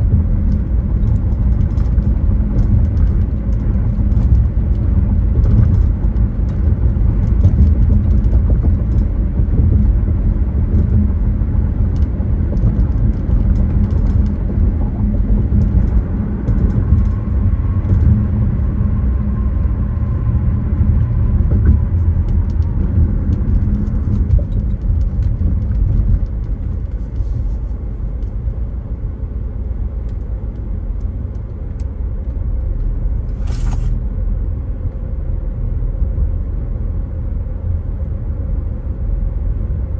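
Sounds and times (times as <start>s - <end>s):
car engine rumble: 0.0s - 39.9s
tyre road noise: 0.0s - 39.9s.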